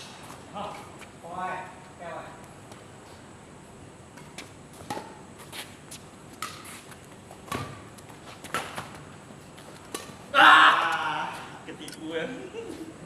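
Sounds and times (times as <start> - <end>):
footsteps on court: 4.2 - 10.1
racquet hitting shuttlecock: 4.8 - 5.2, 6.4 - 9.0.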